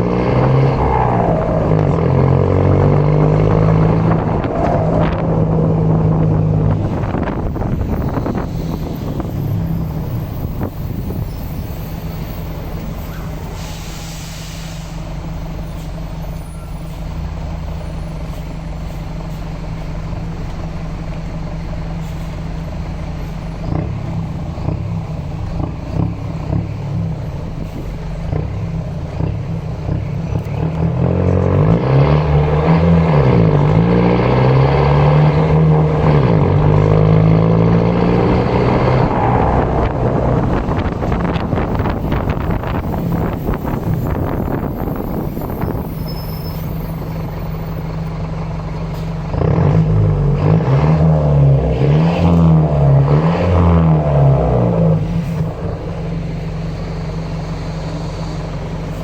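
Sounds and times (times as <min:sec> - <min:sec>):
bus diesel engine idling: 0:00.0 - 0:31.7, 0:34.8 - 0:50.4, 0:54.0 - 0:59.0
brief hiss: 0:13.4 - 0:16.0.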